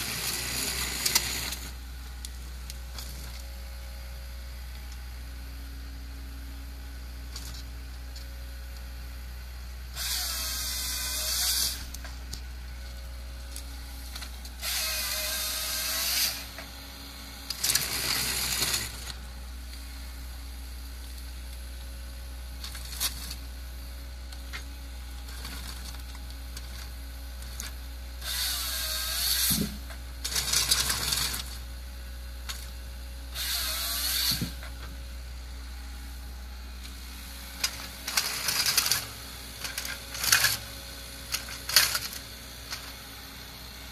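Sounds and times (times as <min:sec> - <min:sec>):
forestry machine running: 0:00.0 - 0:43.9
high-pitched machine whine: 0:33.3 - 0:43.9.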